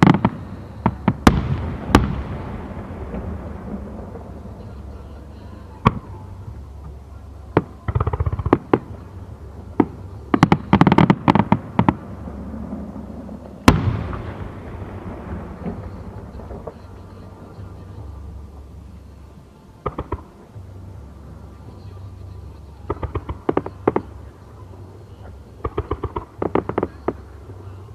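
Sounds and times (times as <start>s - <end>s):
firework boom with rolling echo: 0.0s - 5.0s, 9.8s - 17.0s
distant fireworks bangs and crackles: 0.0s - 19.2s, 19.8s - 27.9s.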